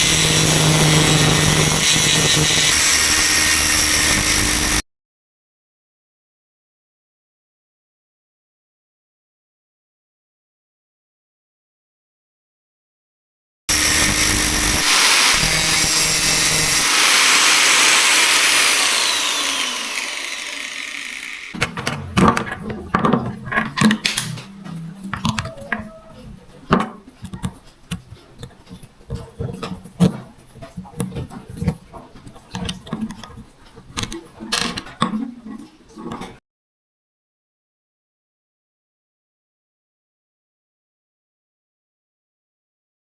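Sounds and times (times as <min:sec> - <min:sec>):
electric drill running: 0:00.0 - 0:04.8, 0:13.7 - 0:21.8
irregular clicks and knocks: 0:21.5 - 0:35.2.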